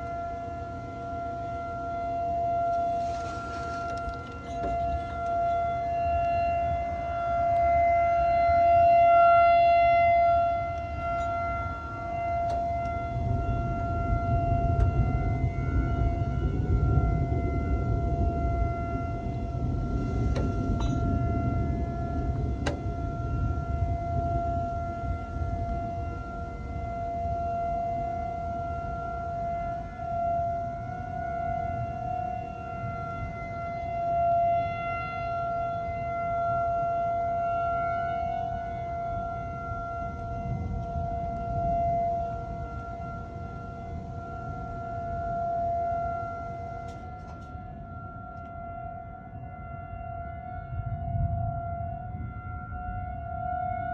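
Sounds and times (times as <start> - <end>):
low rumbling noise: 0.0 - 34.4
warning siren steady tone: 0.0 - 53.9.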